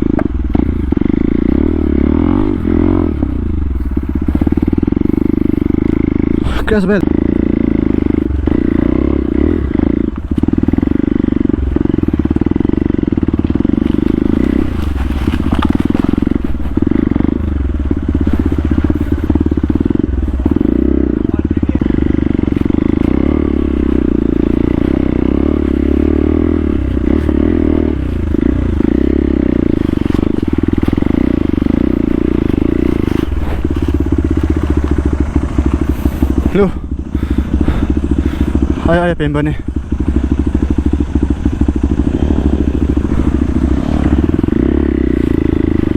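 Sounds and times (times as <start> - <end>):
motorcycle engine running: 0.0 - 45.9
clatters and scrapes: 13.4 - 20.8, 26.6 - 36.6.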